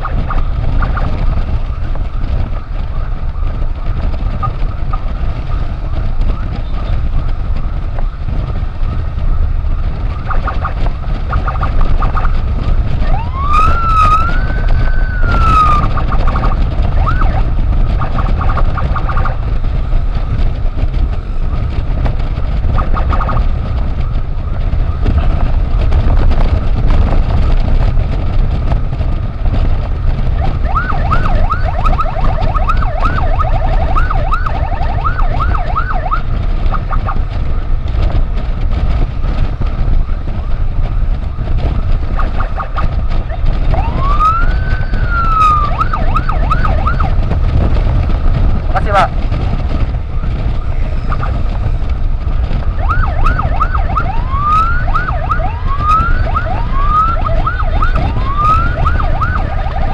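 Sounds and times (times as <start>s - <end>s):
loud low rumble: 0.0s - 59.9s
electronic siren wailing and yelping: 13.0s - 19.4s, 22.8s - 23.4s, 30.4s - 37.2s, 42.2s - 47.2s, 52.7s - 59.9s.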